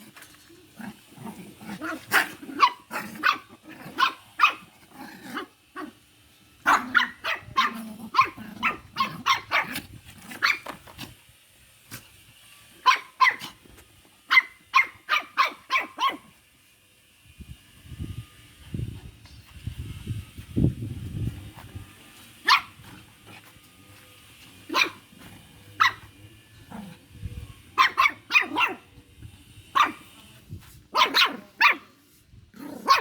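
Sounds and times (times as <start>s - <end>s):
small dog yapping: 1.7s - 5.9s, 6.6s - 10.8s, 12.8s - 13.7s, 14.3s - 16.4s, 22.4s - 23.0s, 24.7s - 25.0s, 25.8s - 26.1s, 27.8s - 28.9s, 29.8s - 30.1s, 30.9s - 31.9s, 32.7s - 33.0s.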